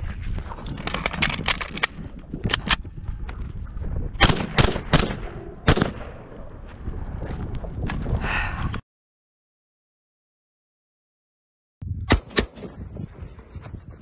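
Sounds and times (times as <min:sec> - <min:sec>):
rifle shots: 0:04.2 - 0:06.2.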